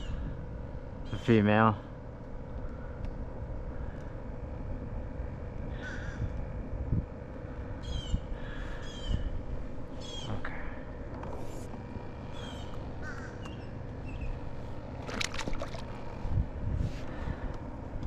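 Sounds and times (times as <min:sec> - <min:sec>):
wind rumbling on microphone: 0:00.0 - 0:01.1, 0:05.7 - 0:10.4, 0:13.9 - 0:18.0
bird calling: 0:01.0 - 0:01.4, 0:05.7 - 0:06.4, 0:07.8 - 0:10.7, 0:11.9 - 0:16.1.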